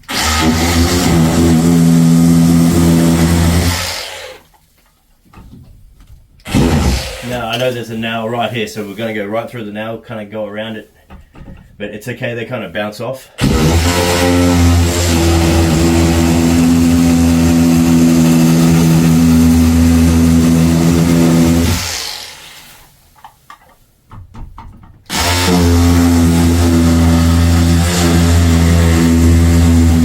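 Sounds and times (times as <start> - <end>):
drywall cutter running: 0.0 - 4.5, 6.4 - 7.7, 13.4 - 22.9, 25.1 - 30.0.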